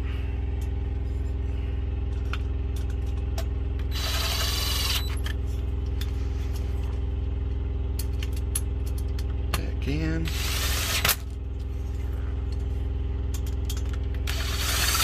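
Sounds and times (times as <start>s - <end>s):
diesel truck engine idling: 0.0s - 14.6s
tools and parts clicking: 8.0s - 9.6s, 13.3s - 15.0s.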